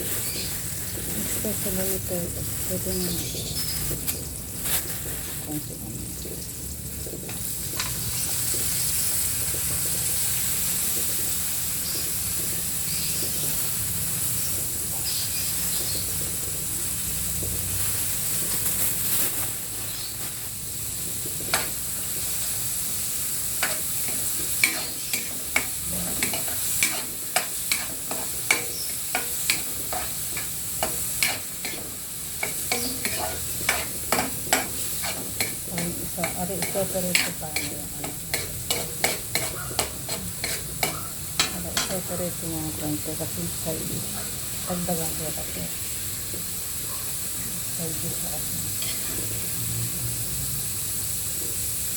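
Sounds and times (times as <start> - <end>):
food sizzling in a frying pan: 0.0 - 51.9
metal utensil knocking on pan: 32.4 - 42.0.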